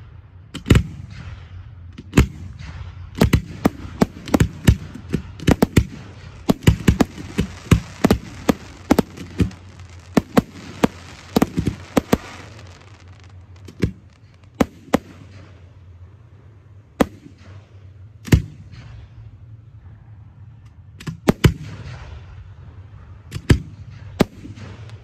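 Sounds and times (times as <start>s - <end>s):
crackling fireworks hiss: 0.0s - 25.0s
fireworks shells bursting with bangs: 0.6s - 19.5s.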